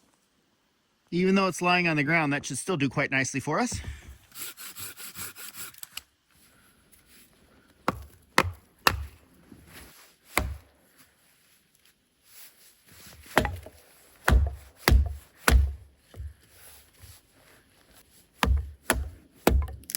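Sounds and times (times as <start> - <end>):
dead wood breaking: 13.3 - 16.3, 18.4 - 19.9.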